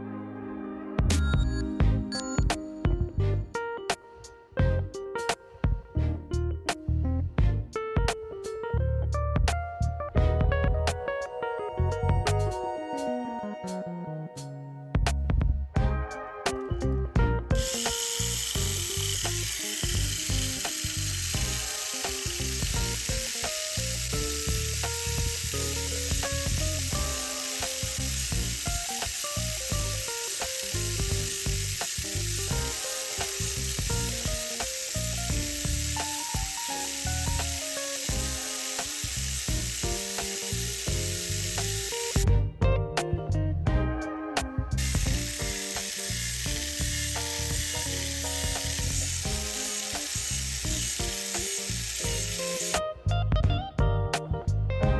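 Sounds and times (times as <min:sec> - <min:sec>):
background music: 0:00.0 - 0:54.9
toy car motor whirring: 0:17.6 - 0:42.3, 0:44.8 - 0:52.8.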